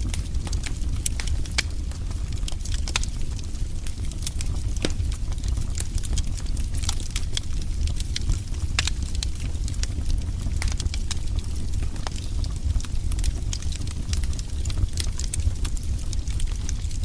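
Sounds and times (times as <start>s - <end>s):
fire crackling and popping: 0.0s - 17.0s
low fire rumble: 0.0s - 17.0s.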